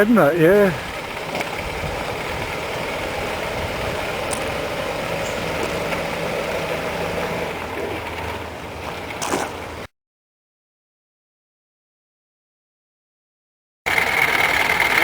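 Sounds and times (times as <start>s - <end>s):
car engine running: 0.0s - 9.9s, 13.9s - 15.0s.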